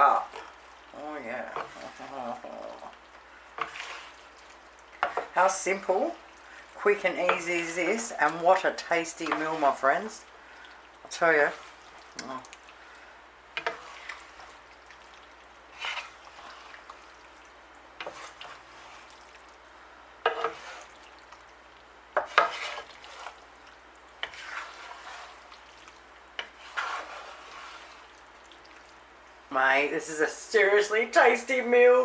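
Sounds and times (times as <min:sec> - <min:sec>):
cutlery scraping and clinking on dish: 0:20.3 - 0:20.7, 0:22.2 - 0:22.9.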